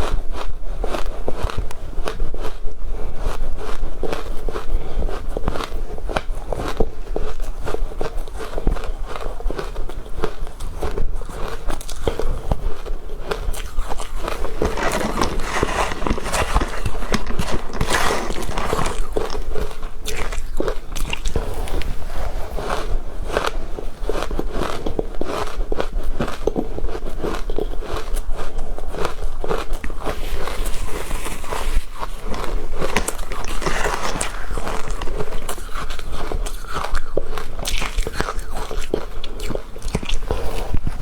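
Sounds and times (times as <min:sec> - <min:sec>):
crunchy ice being chewed: 0:00.0 - 0:41.0.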